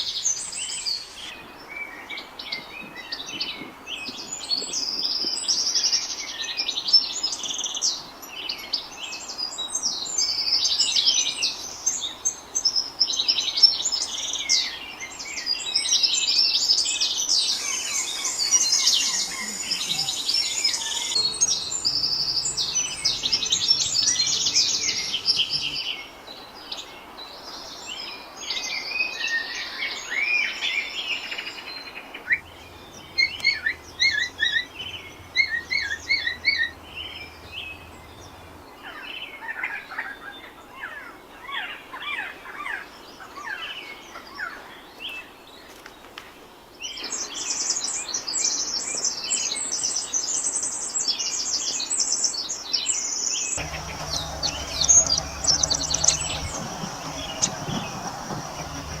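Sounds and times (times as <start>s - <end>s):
songbirds chirping and singing: 17.4s - 26.1s, 53.6s - 59.0s.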